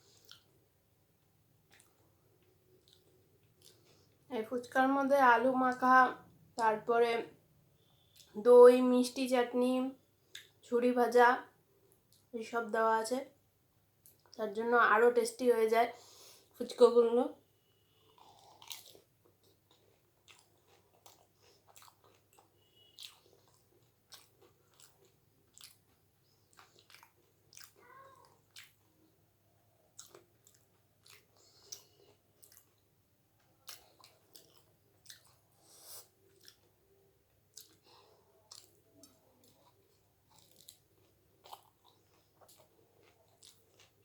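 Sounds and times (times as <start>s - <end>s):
chewing smacks: 0.1s - 0.5s, 1.6s - 4.2s, 10.3s - 10.6s, 18.1s - 29.0s, 29.9s - 36.8s, 37.5s - 44.0s.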